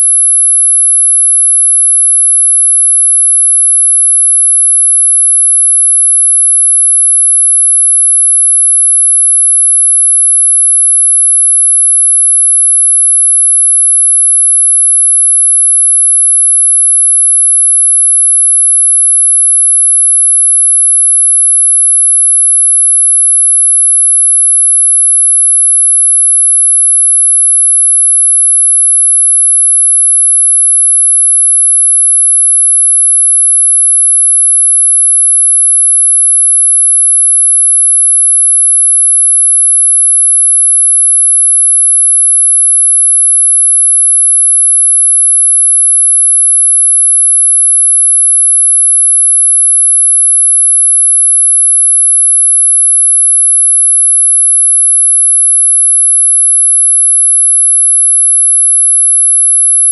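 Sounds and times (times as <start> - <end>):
steady high sine tone: 0.0 - 59.9.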